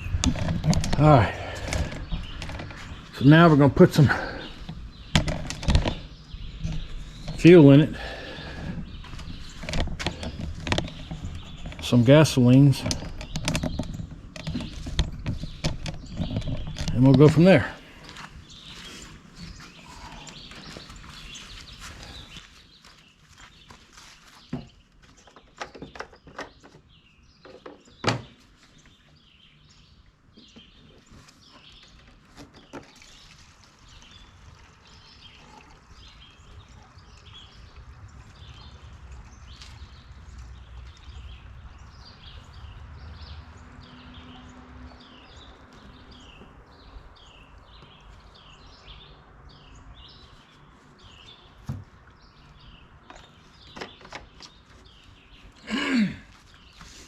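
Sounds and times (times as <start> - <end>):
birds chirping: 0.0 - 57.0
sharp knocks and clicks: 4.6 - 7.5, 9.0 - 11.9, 12.5 - 17.4.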